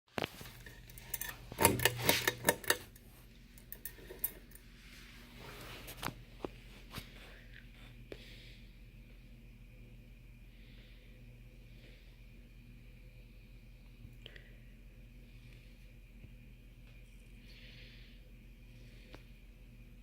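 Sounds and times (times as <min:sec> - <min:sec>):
fan rattling clicks: 0:00.2 - 0:03.0, 0:03.6 - 0:04.6
ceiling fan motor hum: 0:00.2 - 0:20.0.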